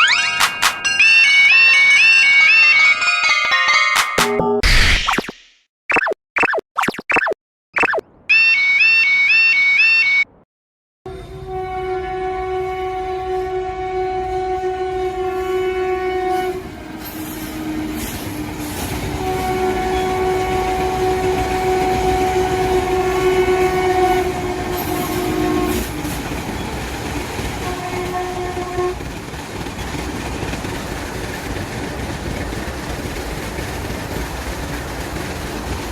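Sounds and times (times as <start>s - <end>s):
train horn blasts: 11.1s - 26.1s, 27.6s - 29.1s
passing train rumble and clickety-clack: 11.1s - 35.9s.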